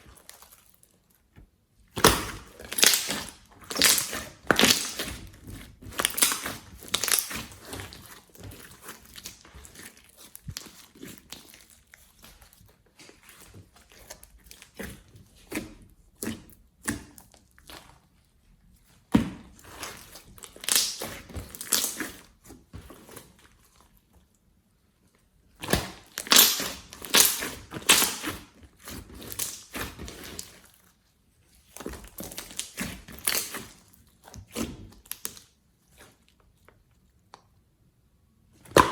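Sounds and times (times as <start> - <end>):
slime crackling and popping: 1.9 - 12.4, 19.6 - 22.3, 25.6 - 30.6, 31.9 - 33.8.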